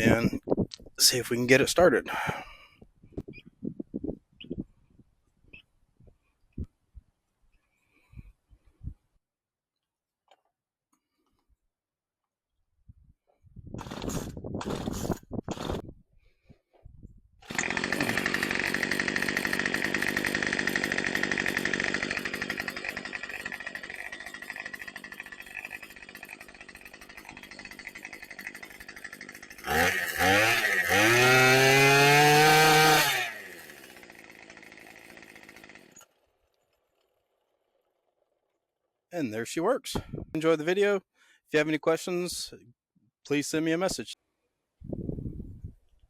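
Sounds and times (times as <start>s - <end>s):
string trimmer engine running: 2.1s - 2.4s, 13.8s - 15.8s, 17.4s - 38.2s.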